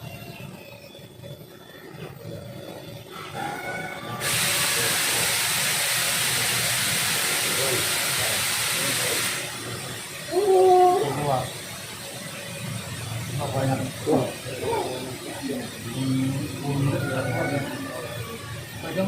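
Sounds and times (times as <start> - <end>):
loud steady hiss: 3.9 - 19.0.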